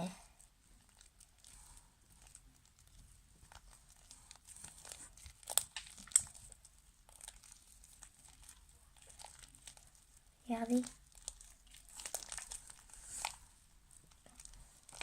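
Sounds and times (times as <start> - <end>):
slime squeezed and pulled by hand: 0.4 - 15.0
sharp slime snaps: 5.4 - 6.4.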